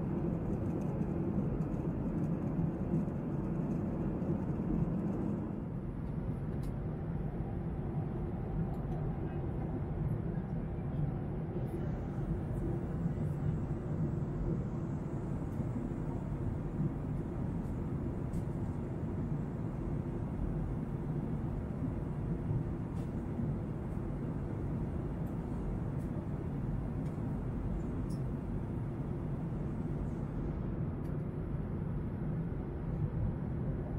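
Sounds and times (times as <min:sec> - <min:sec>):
airliner cabin rumble: 0:00.0 - 0:33.9
faint steady hum: 0:11.5 - 0:31.9.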